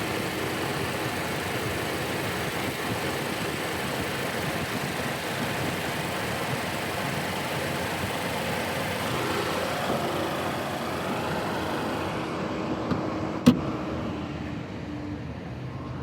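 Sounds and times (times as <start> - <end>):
car engine idling: 0.0 - 13.3.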